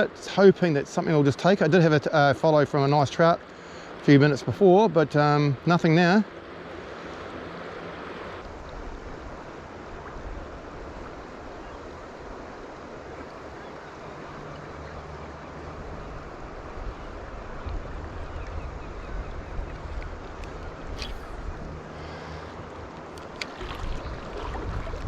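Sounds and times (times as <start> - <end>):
river water rushing: 0.0 - 25.0
wind rumble on microphone: 15.7 - 21.9, 22.5 - 25.0.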